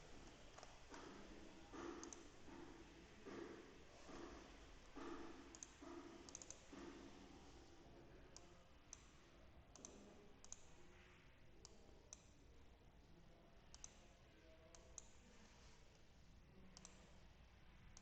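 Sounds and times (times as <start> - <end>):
faint computer mouse clicks: 1.8 - 2.3, 5.5 - 6.7, 8.3 - 10.7, 11.6 - 12.4, 13.7 - 14.1, 16.7 - 17.1.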